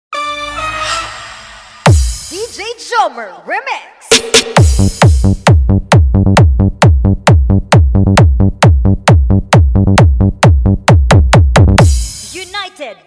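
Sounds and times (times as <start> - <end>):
electronic dance music: 0.2 - 2.8, 4.0 - 13.0
rapid kick drums: 1.9 - 2.3, 4.1 - 12.6
deep bass line: 4.6 - 12.2.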